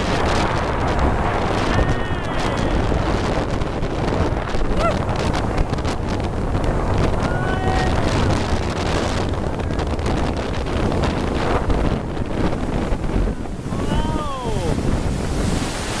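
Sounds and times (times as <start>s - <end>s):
rushing water: 0.0s - 16.0s
speedboat engine: 0.0s - 16.0s
wind buffeting microphone: 0.0s - 16.0s.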